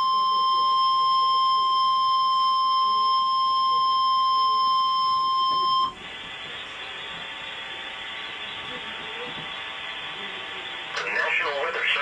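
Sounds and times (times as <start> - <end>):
piercing warning alarm tone: 0.0 - 6.0.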